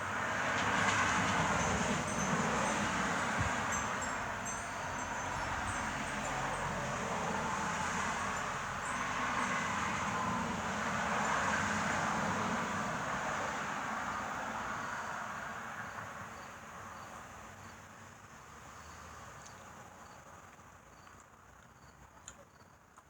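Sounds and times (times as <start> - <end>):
vehicle passing: 0.0 - 16.1.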